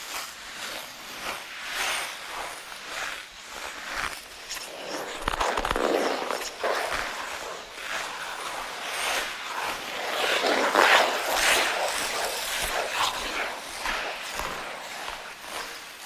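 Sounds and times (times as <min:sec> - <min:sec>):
ice skates scraping ice: 0:00.0 - 0:16.0.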